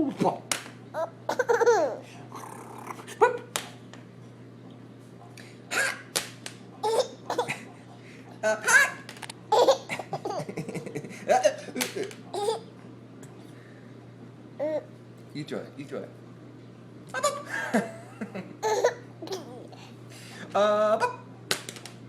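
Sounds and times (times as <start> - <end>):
baby giggling: 1.0 - 2.0, 6.8 - 7.6, 8.6 - 11.6, 12.3 - 12.6, 18.6 - 19.8
baby hiccups: 5.7 - 6.0.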